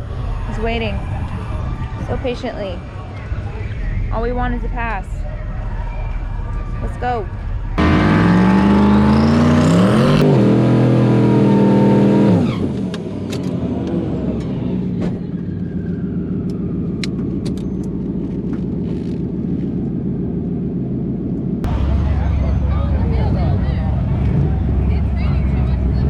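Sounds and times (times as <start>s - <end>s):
car engine revving hard: 7.8s - 15.0s.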